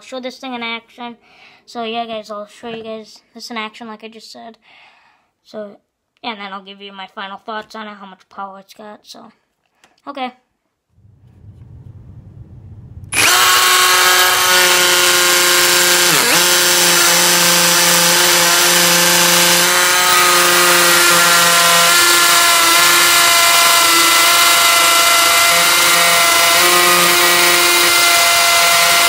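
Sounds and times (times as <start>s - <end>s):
hammer drill drilling into concrete: 13.1s - 29.0s.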